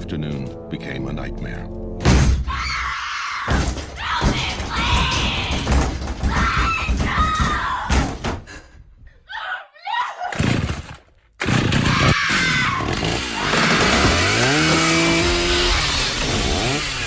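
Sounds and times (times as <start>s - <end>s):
person screaming in terror: 9.3s - 10.4s, 11.8s - 14.0s.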